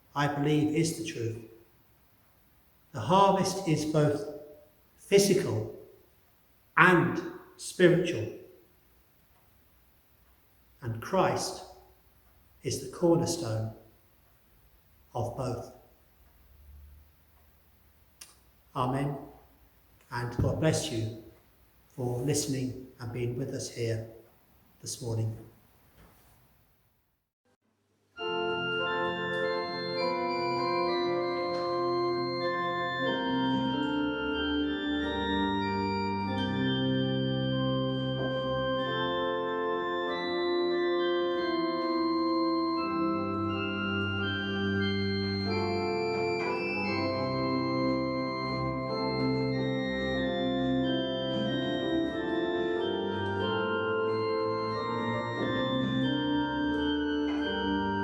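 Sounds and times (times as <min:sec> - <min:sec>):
organ playing slow chords: 0:00.0 - 0:01.8, 0:02.8 - 0:06.2, 0:06.8 - 0:08.6, 0:10.0 - 0:24.2, 0:28.2 - 0:58.0
person speaking a blessing: 0:00.2 - 0:01.4, 0:03.0 - 0:04.3, 0:05.0 - 0:05.7, 0:06.8 - 0:08.4, 0:10.8 - 0:11.7, 0:12.6 - 0:13.8, 0:15.1 - 0:15.8, 0:18.8 - 0:19.3, 0:20.1 - 0:21.2, 0:22.0 - 0:24.1, 0:24.8 - 0:25.5.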